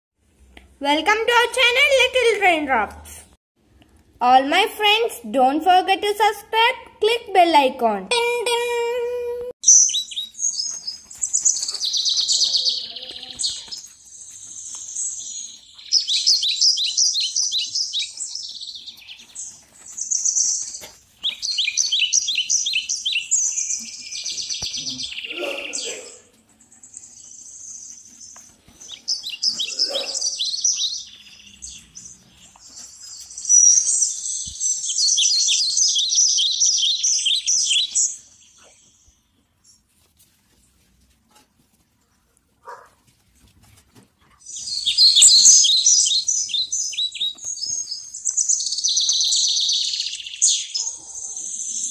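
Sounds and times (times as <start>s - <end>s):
birds chirping and trilling: 9.6s - 39.6s, 44.4s - 51.9s.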